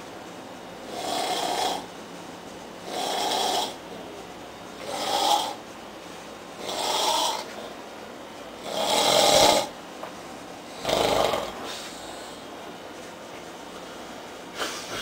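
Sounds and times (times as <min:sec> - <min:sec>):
man snoring loudly: 0:00.9 - 0:01.9, 0:02.9 - 0:03.8, 0:04.8 - 0:05.6, 0:06.6 - 0:07.5, 0:08.6 - 0:09.7, 0:10.8 - 0:11.6.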